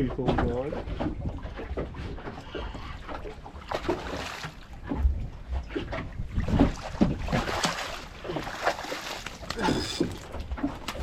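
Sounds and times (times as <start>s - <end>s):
water splashing against boat hull: 0.0s - 11.0s
wind buffeting microphone: 4.8s - 8.5s.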